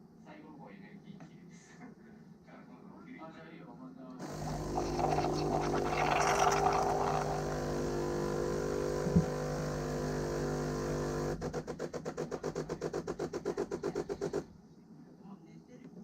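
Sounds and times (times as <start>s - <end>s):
rapid even pulsing: 4.2s - 9.7s
motor humming: 4.2s - 11.7s.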